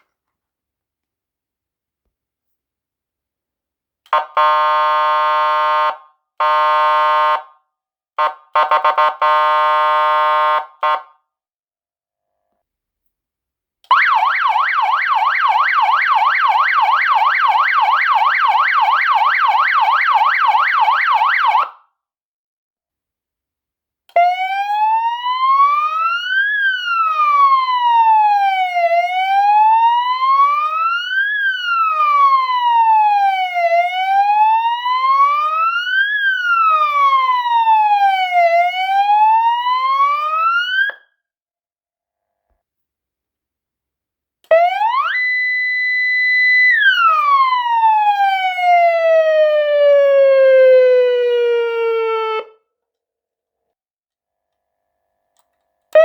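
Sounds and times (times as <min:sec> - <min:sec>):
electronic car siren yelp and wail: 0:13.9 - 0:21.8, 0:24.2 - 0:41.1, 0:44.5 - 0:52.6.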